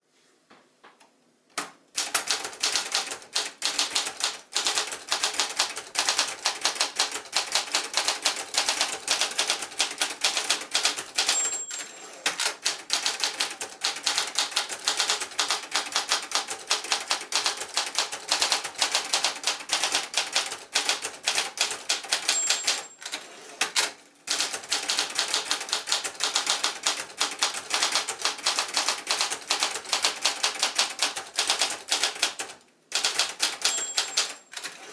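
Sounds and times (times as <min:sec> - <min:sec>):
typewriter keystroke clacks: 0:01.6 - 0:34.8
typewriter bell ding: 0:11.1 - 0:12.4, 0:22.1 - 0:23.1, 0:33.5 - 0:34.7.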